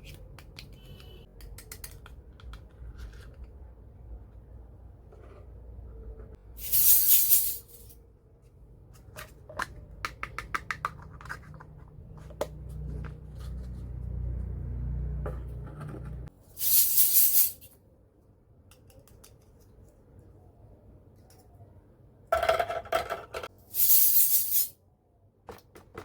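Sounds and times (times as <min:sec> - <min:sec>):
light clicks and taps of toy pieces: 0:18.6 - 0:19.9.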